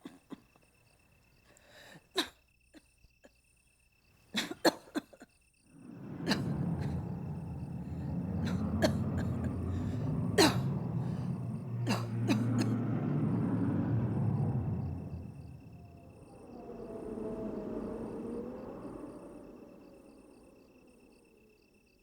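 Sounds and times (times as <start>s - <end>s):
woman coughing: 4.4s - 5.2s.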